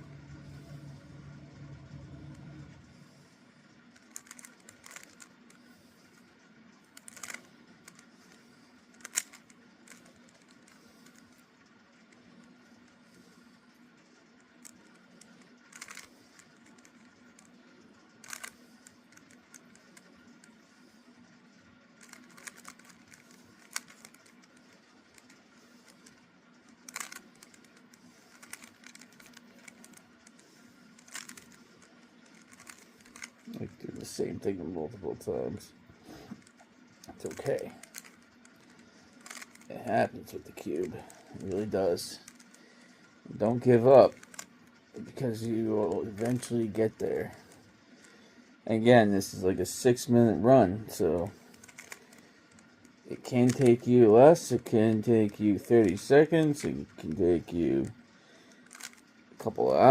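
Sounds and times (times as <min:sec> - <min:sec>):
faint steady hum: 0:00.0 - 0:59.9
plastic cube clicking: 0:04.0 - 0:05.3, 0:07.0 - 0:08.0, 0:08.9 - 0:11.3, 0:14.6 - 0:17.5, 0:18.2 - 0:18.6, 0:22.0 - 0:24.5, 0:26.8 - 0:30.4, 0:31.0 - 0:33.5, 0:37.2 - 0:39.7, 0:44.1 - 0:44.5, 0:51.6 - 0:52.2, 0:53.4 - 0:53.8, 0:58.6 - 0:59.0.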